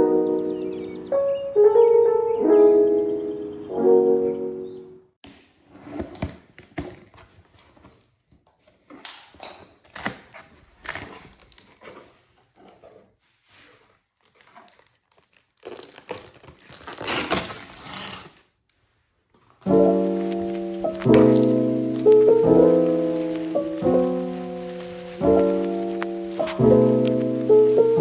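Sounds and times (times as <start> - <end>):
packaging crinkling and rustling: 5.8 - 12.9, 13.6 - 18.5, 19.4 - 28.0.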